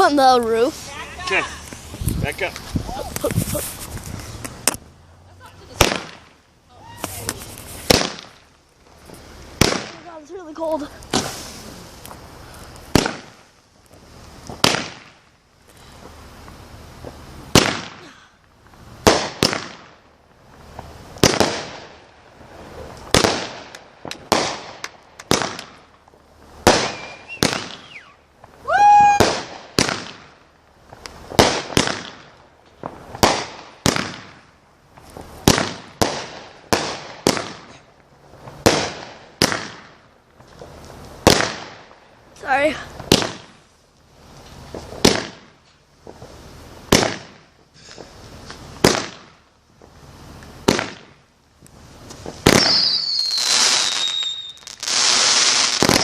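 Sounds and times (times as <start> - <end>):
firework bangs with echo: 5.7 - 8.5, 9.5 - 11.7, 12.9 - 13.5, 14.5 - 15.2, 17.5 - 18.1, 19.0 - 20.0, 21.2 - 22.1, 23.1 - 26.0, 26.6 - 28.2, 29.0 - 30.4, 31.2 - 34.5, 35.4 - 37.9, 38.5 - 40.0, 41.2 - 43.6, 44.7 - 46.3, 46.9 - 47.6, 48.4 - 49.4, 50.6 - 51.2, 52.2 - 56.0.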